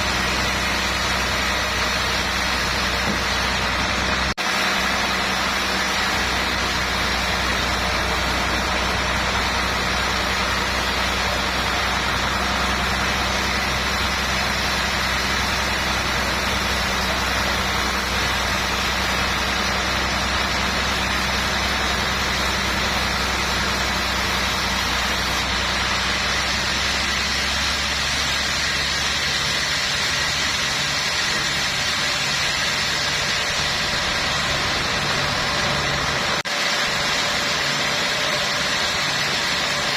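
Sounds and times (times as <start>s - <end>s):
machine motor humming: 0.0s - 39.9s.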